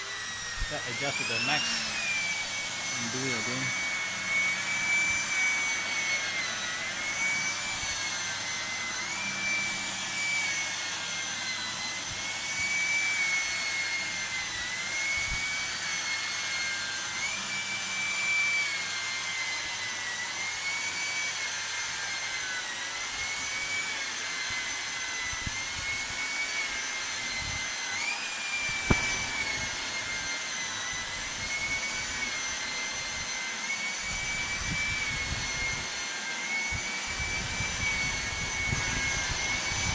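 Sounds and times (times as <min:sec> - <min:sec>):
vacuum cleaner whining: 0:00.0 - 0:39.9
sharp knock: 0:28.8 - 0:29.8.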